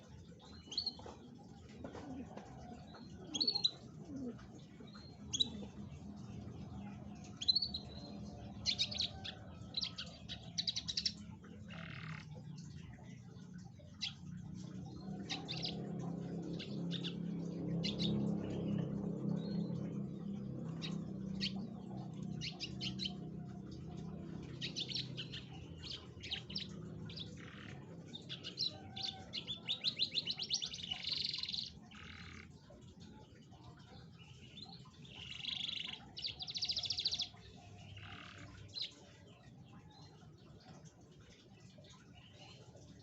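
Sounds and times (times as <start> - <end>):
canary singing: 4.9 - 32.5, 34.2 - 39.1.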